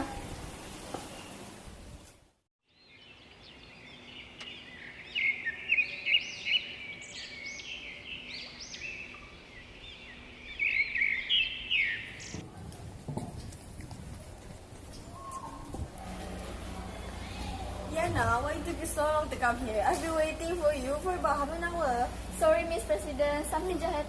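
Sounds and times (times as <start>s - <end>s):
birds chirping and singing: 2.7s - 12.4s.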